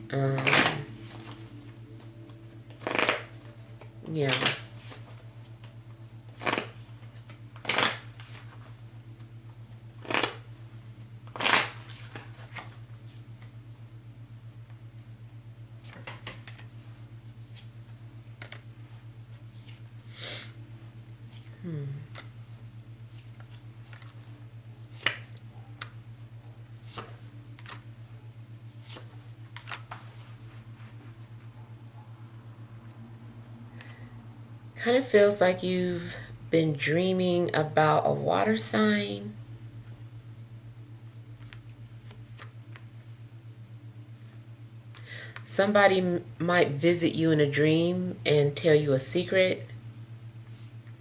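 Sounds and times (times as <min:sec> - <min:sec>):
steady low hum: 0:00.0 - 0:51.0
cards being shuffled: 0:00.3 - 0:05.7, 0:06.3 - 0:10.5, 0:11.2 - 0:13.5, 0:15.8 - 0:16.7, 0:18.3 - 0:18.7, 0:19.3 - 0:19.9, 0:21.1 - 0:22.3, 0:23.0 - 0:25.9, 0:26.8 - 0:27.9, 0:28.7 - 0:31.4, 0:41.4 - 0:42.9
cards snapping and flicking: 0:02.7 - 0:03.3, 0:04.3 - 0:05.0, 0:06.4 - 0:08.4, 0:10.0 - 0:10.4, 0:11.3 - 0:12.7, 0:18.4 - 0:18.6, 0:24.9 - 0:26.0, 0:41.4 - 0:42.9.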